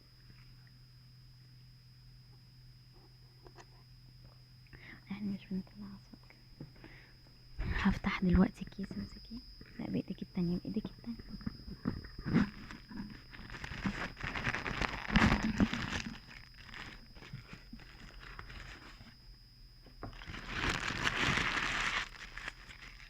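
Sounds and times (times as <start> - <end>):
bag torn open and crinkled: 12.3 - 19.0, 20.2 - 23.0.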